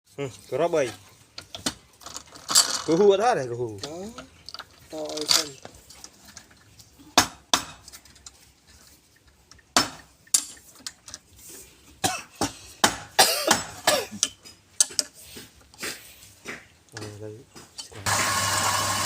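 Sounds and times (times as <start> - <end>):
hard objects knocking and clinking: 0.8 - 3.1, 9.2 - 11.3, 11.9 - 15.8.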